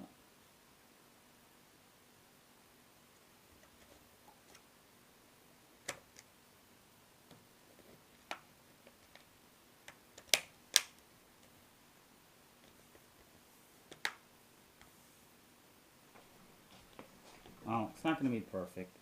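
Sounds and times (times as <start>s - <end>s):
plastic clips snapping: 8.2s - 11.0s.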